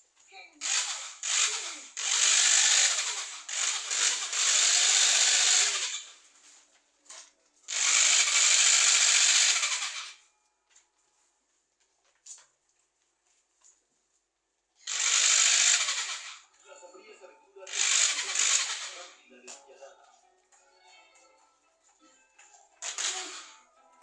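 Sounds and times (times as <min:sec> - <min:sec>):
electric drill running: 0:00.6 - 0:06.2, 0:07.7 - 0:10.2, 0:14.8 - 0:16.5, 0:17.7 - 0:19.2, 0:22.8 - 0:23.7.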